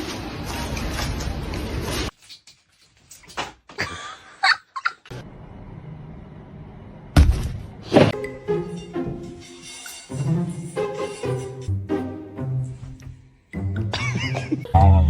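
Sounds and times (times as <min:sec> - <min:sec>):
background music with held notes: 0:08.2 - 0:15.0.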